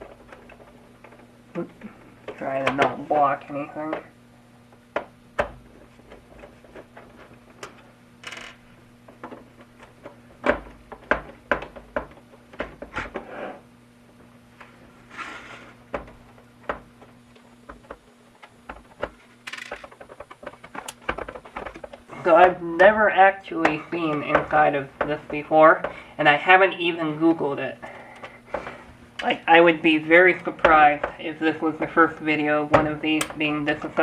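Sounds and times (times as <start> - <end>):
plastic parts clicking and scraping: 18.8 - 22.0.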